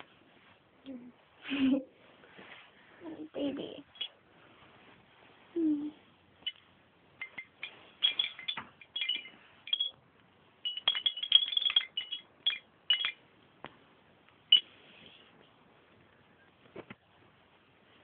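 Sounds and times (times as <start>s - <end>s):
light metallic jingling: 7.2s - 10.0s, 10.6s - 13.2s.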